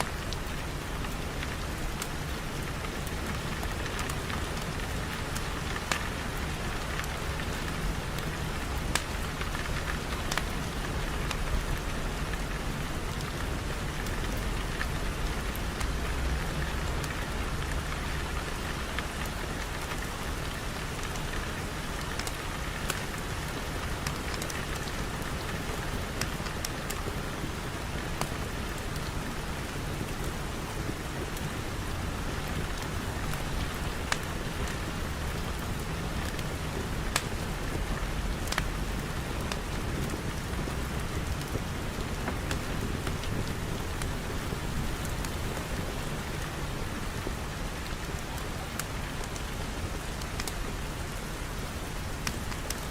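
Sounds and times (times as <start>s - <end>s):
sharp ticks of raindrops: 0.0s - 52.9s
steady rain falling: 0.0s - 52.9s.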